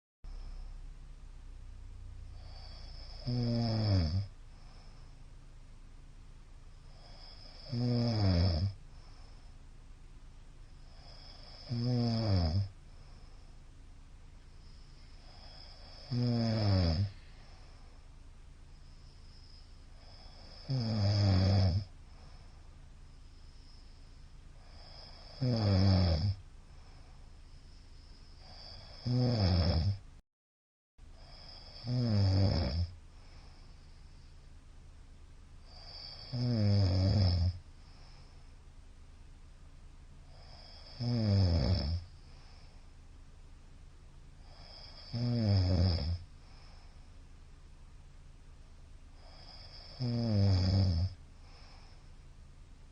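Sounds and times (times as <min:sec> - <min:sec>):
quiet breathing: 0:00.2 - 0:30.2, 0:31.0 - 0:52.9
man snoring: 0:02.3 - 0:04.9, 0:06.8 - 0:09.2, 0:10.8 - 0:12.8, 0:14.6 - 0:17.9, 0:19.0 - 0:22.4, 0:23.4 - 0:26.4, 0:27.6 - 0:30.0, 0:31.2 - 0:33.5, 0:35.6 - 0:38.2, 0:40.3 - 0:42.6, 0:44.4 - 0:46.9, 0:49.2 - 0:52.0.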